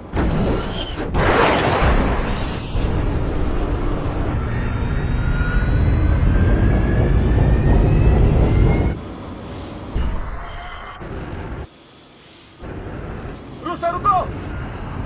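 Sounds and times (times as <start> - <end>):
jet engine roar with rising whine: 0.0 - 15.0.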